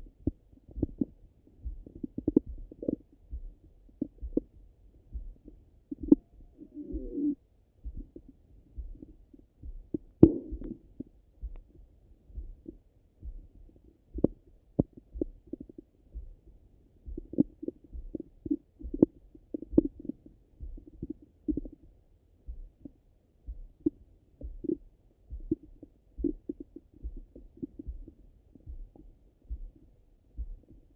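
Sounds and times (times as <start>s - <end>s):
stomach gurgles and pops: 0.0s - 1.2s, 1.8s - 3.1s, 5.3s - 8.3s, 9.8s - 11.8s, 17.1s - 21.8s
low regular thump: 0.0s - 7.2s, 7.8s - 10.8s, 11.4s - 16.4s, 17.0s - 21.8s, 23.4s - 29.8s, 30.4s - 30.9s.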